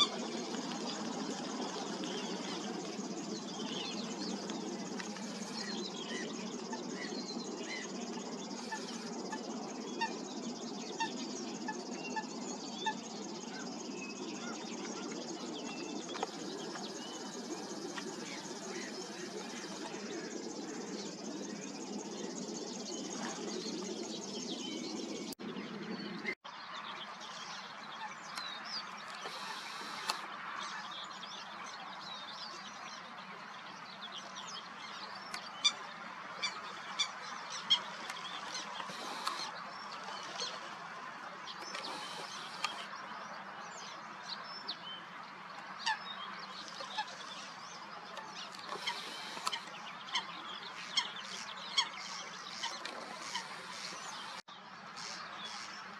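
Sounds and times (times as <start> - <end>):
waterbirds honking: 0.0 - 10.2, 16.1 - 20.9, 29.1 - 30.9, 35.3 - 43.0, 45.8 - 54.4.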